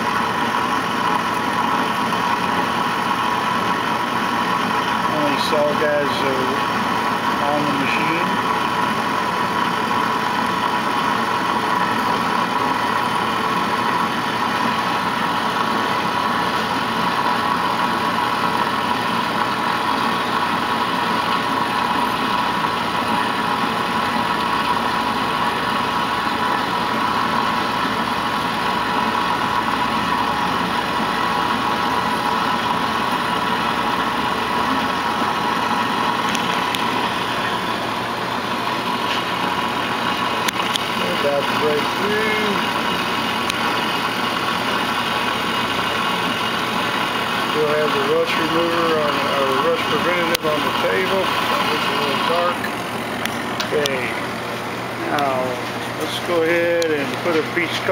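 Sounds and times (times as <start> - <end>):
blade whine: 0.0 - 54.4
bandsaw cutting metal: 47.5 - 52.8.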